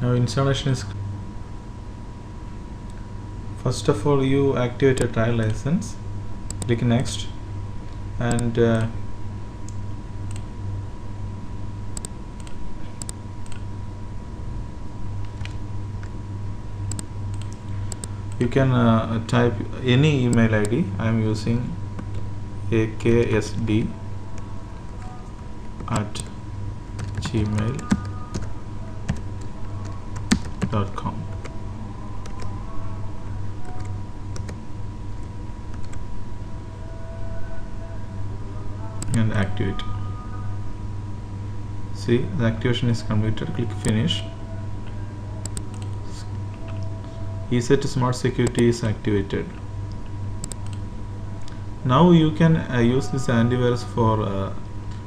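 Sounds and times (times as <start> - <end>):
faint high whine: 0.0 - 55.0
low electrical hum: 0.0 - 55.0
computer mouse clicks: 6.5 - 6.7, 12.0 - 13.6, 16.9 - 18.1, 48.4 - 48.6, 50.4 - 50.8
computer keyboard clicks: 35.7 - 36.0, 50.4 - 50.8.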